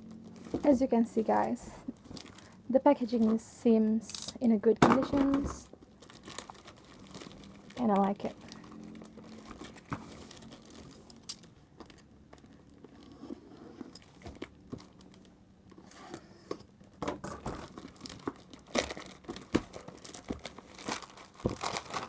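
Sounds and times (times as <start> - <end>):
packaging tearing and crinkling: 5.3 - 13.1, 16.8 - 22.0.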